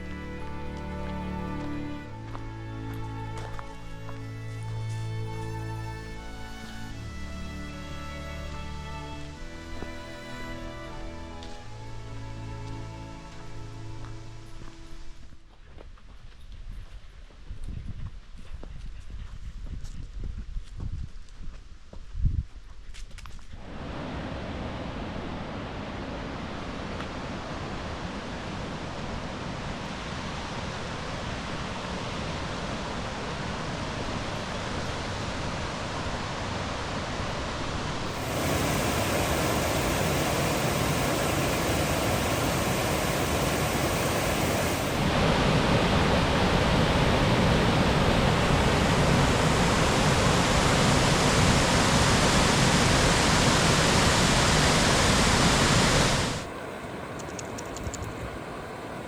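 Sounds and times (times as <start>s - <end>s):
waterfall rushing water: 23.6s - 59.0s.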